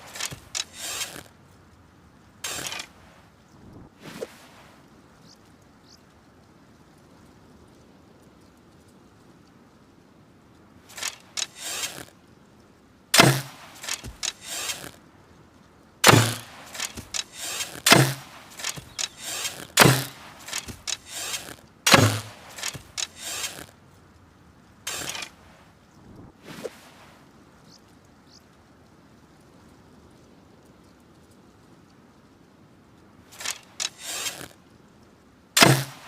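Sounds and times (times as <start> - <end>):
clicks and rattles: 0.0 - 1.3, 2.4 - 2.9, 10.9 - 12.1, 13.2 - 15.0, 16.0 - 23.7, 24.9 - 25.4, 33.3 - 34.6
bow string snap: 16.0 - 23.7.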